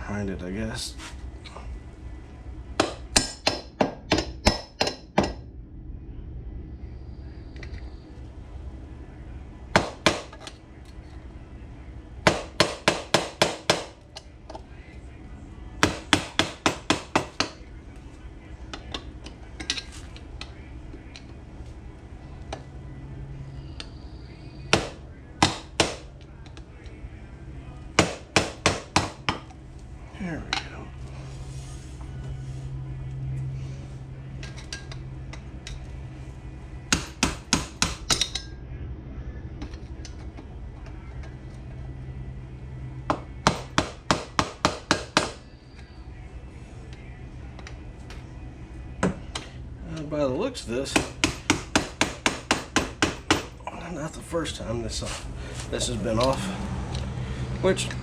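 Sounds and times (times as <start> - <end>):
steady low hum: 0.0 - 58.0
hammer striking metal: 2.8 - 5.5, 12.3 - 14.0, 15.8 - 17.6, 24.7 - 26.1, 28.0 - 29.4, 36.9 - 38.5, 43.1 - 45.4, 50.9 - 53.6.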